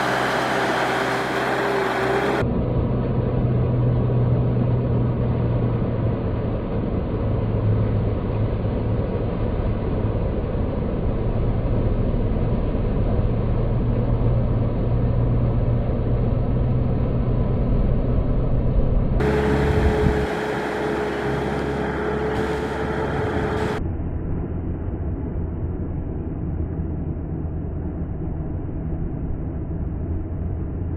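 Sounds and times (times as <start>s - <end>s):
tractor engine running: 0.0s - 2.4s, 6.1s - 23.8s
engine humming: 0.0s - 25.0s.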